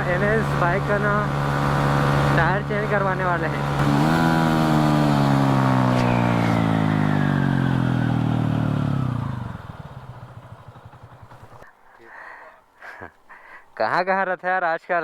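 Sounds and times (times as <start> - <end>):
motorcycle engine slowing: 0.0 - 11.7.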